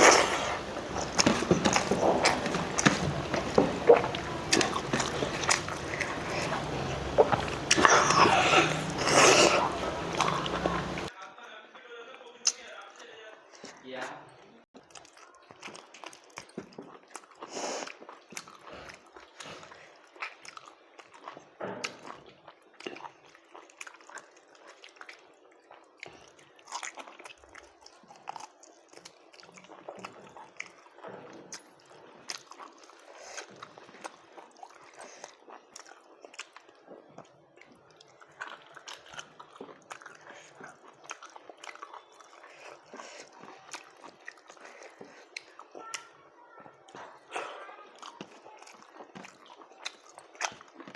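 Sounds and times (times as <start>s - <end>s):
mouth clicks and smacks: 0.0s - 11.1s
person chewing food: 0.0s - 11.1s, 14.8s - 46.3s, 46.9s - 50.9s.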